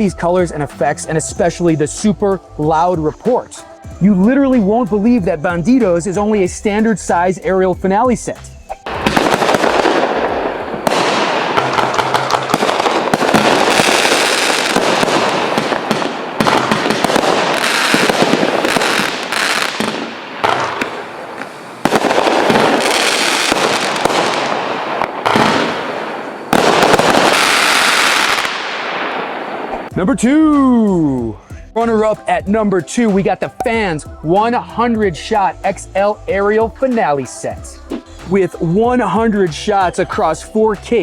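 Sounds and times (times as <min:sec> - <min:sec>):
fireworks crackling: 0:08.9 - 0:30.0.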